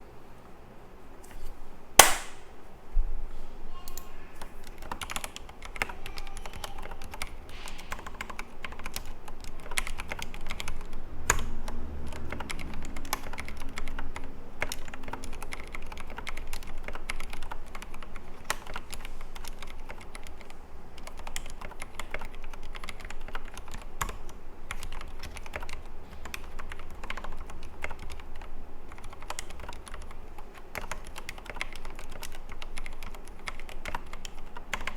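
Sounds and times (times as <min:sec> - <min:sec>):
sharp loud click: 0:02.0 - 0:02.5
mechanical keyboard typing: 0:04.6 - 0:34.9.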